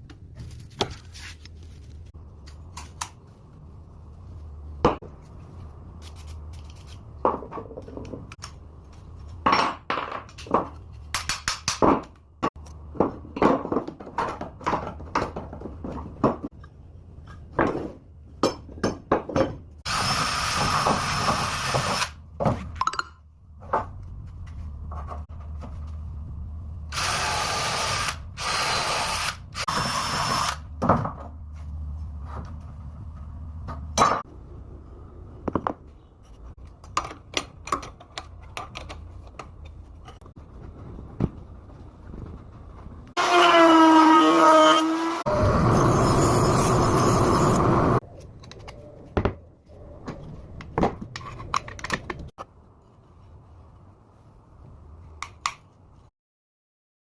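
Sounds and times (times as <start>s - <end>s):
power tool running: 19.9s - 22.1s, 26.9s - 30.6s.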